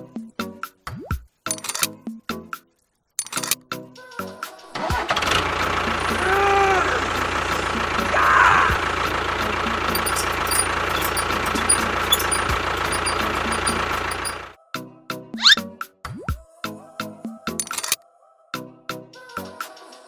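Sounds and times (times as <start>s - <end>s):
engine running steadily: 4.8s - 14.6s
brief squeal: 9.9s - 14.5s, 15.4s - 15.6s.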